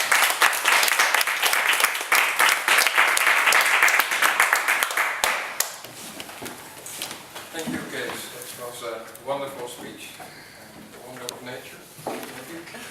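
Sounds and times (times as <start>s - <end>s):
audience applauding: 0.0s - 5.8s.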